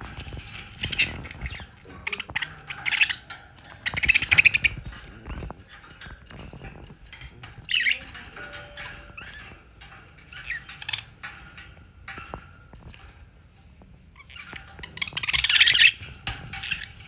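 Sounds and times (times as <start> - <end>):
budgerigar chattering: 0.7 - 5.6.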